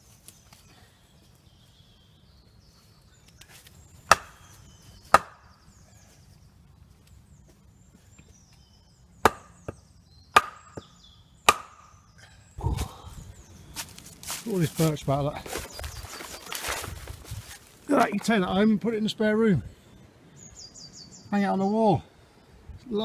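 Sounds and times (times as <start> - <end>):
wood chopping blows: 11.5 - 11.9.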